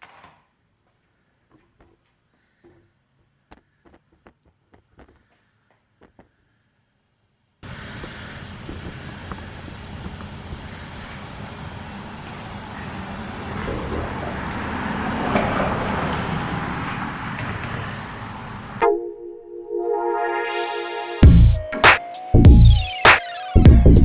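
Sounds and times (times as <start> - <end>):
electronic music: 18.8 - 24.0.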